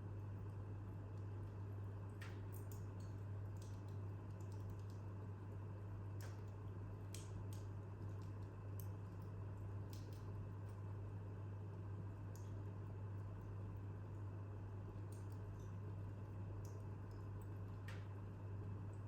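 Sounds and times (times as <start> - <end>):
wood fire crackling: 1.0 - 10.9.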